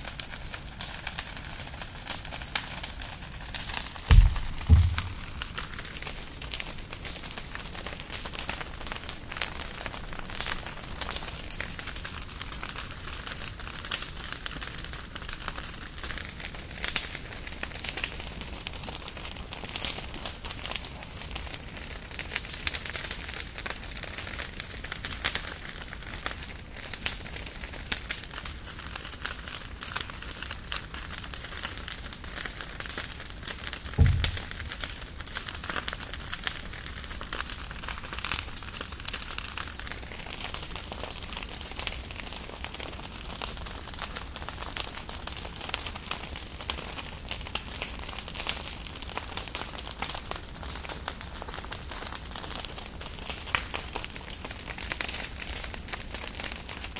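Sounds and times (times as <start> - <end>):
wood fire crackling and popping: 0.0 - 56.9
dull low thump: 4.0 - 5.8, 34.0 - 34.9.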